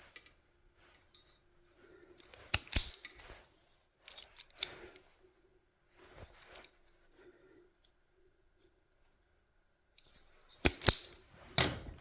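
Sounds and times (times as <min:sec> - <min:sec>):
hand cutters snipping wire: 0:02.2 - 0:03.1, 0:10.6 - 0:11.8.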